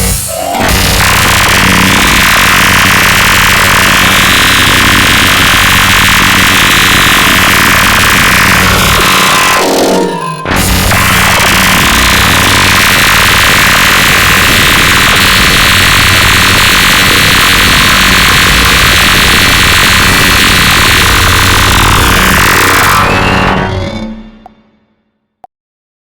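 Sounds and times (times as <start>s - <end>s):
low hum: 0.0s - 16.0s
distorted synthesized ringtone: 7.0s - 14.0s.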